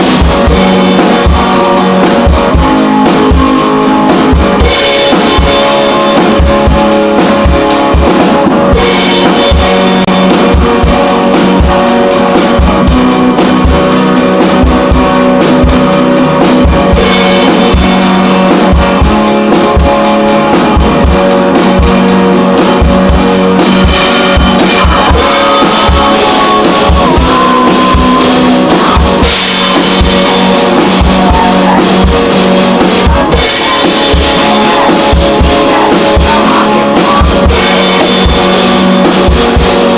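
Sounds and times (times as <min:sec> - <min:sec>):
drum kit beat: 0:00.0 - 0:39.9
guitar: 0:00.0 - 0:39.9.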